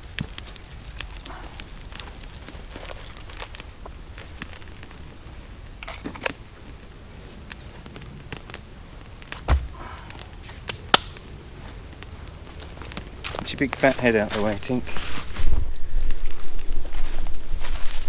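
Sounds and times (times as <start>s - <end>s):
campfire crackling: 0.0s - 18.0s
dull thump: 9.4s - 9.8s
sharp pops: 10.5s - 11.2s.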